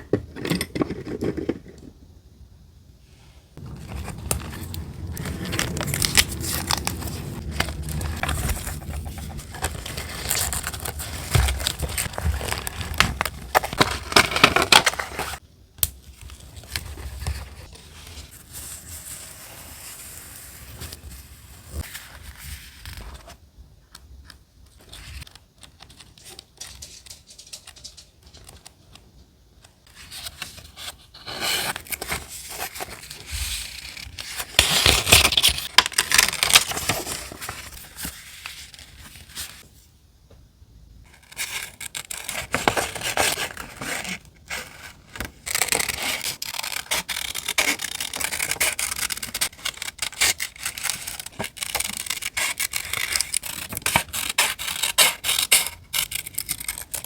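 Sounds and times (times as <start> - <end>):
paper rubbing and scraping: 3.6 - 15.4, 41.2 - 57.0.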